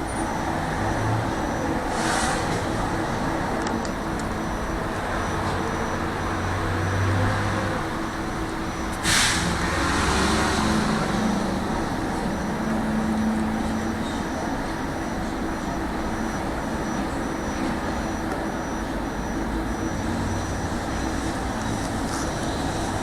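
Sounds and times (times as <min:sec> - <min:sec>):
tram rumbling: 0:00.0 - 0:23.0
short hiss: 0:09.0 - 0:09.5.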